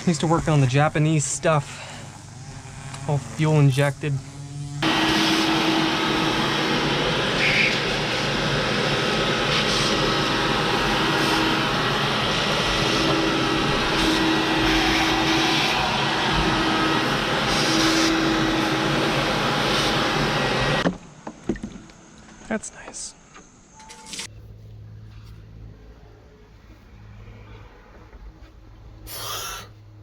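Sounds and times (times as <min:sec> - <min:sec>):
motor-driven machine rushing: 0:29.1 - 0:29.7.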